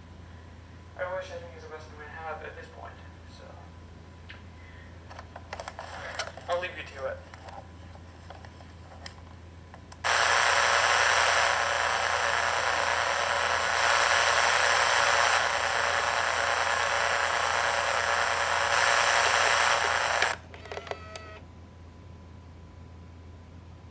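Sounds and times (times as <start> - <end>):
low steady hum: 0.0 - 23.9
loud static hiss: 10.0 - 20.5.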